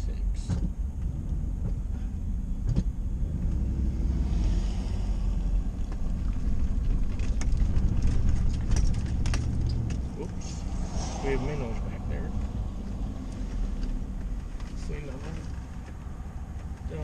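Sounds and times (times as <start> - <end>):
road and engine rumble: 0.0 - 17.0
clicks and rattles: 5.9 - 10.4.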